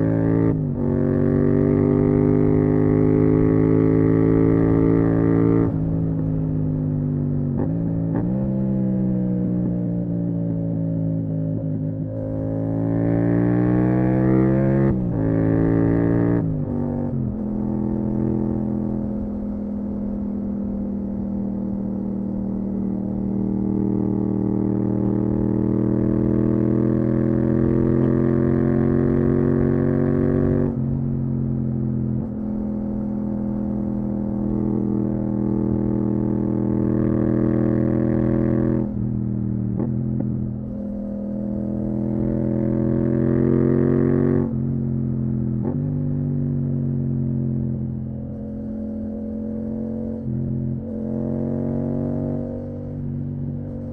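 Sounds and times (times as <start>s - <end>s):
motorcycle engine under throttle: 0.0s - 53.9s.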